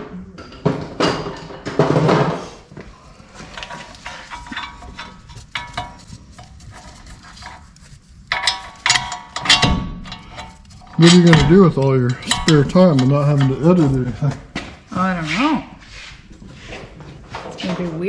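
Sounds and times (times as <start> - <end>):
ringing metal clanks: 3.4 - 7.7, 8.3 - 14.4
metallic clicks of tools: 8.3 - 13.9.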